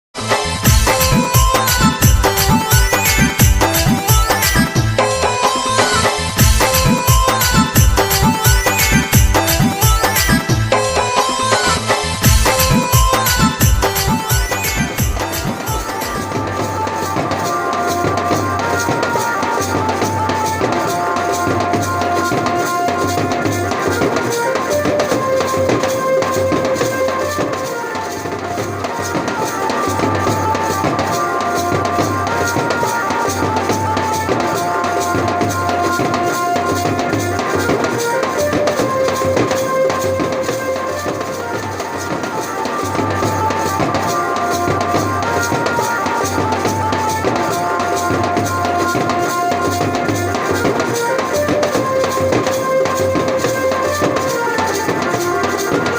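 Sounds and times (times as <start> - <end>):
melody of held notes: 0.2 - 55.9
dense steady drum beat: 0.6 - 5.3, 12.2 - 17.4.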